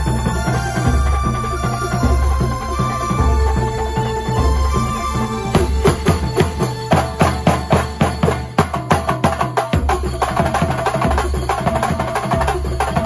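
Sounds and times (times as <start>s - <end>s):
steady pitched tone: 0.0s - 8.8s
drums beating fast rhythm: 0.0s - 13.0s.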